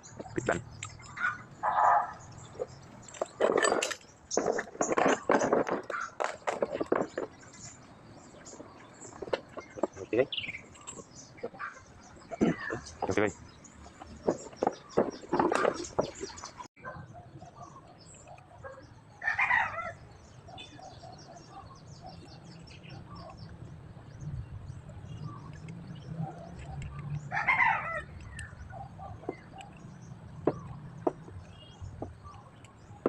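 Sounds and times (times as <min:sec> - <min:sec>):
rooster crowing: 0:27.3 - 0:28.1.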